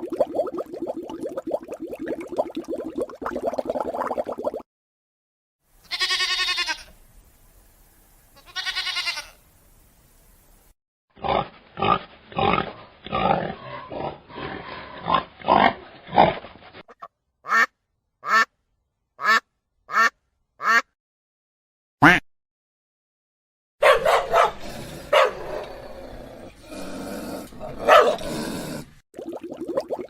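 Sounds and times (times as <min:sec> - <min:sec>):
sheep bleating: 0:05.8 - 0:06.9, 0:08.4 - 0:09.4
pig grunting: 0:11.2 - 0:16.4, 0:24.4 - 0:28.9
duck quacking: 0:17.5 - 0:18.5, 0:19.2 - 0:20.9.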